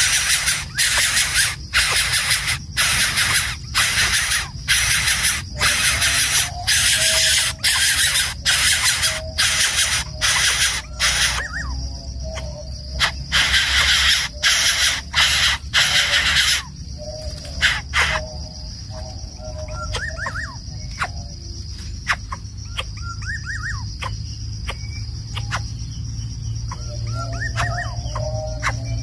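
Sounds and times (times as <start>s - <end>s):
loud hissing bursts: 0.0s - 11.4s, 13.3s - 16.6s
crickets droning: 0.0s - 29.0s.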